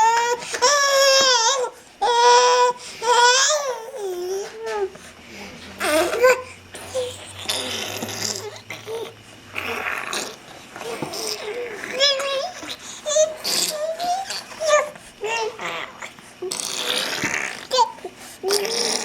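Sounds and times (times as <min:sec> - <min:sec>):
baby babbling: 0:00.0 - 0:05.0, 0:05.8 - 0:19.0
baby making high-pitched sounds: 0:05.8 - 0:19.0.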